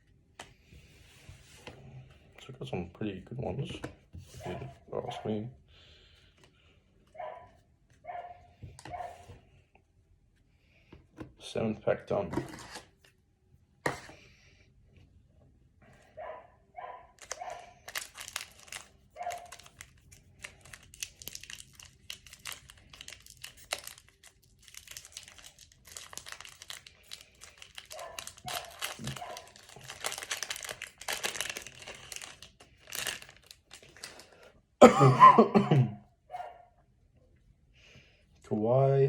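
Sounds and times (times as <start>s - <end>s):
foil pack tearing and crinkling: 17.2s - 34.4s.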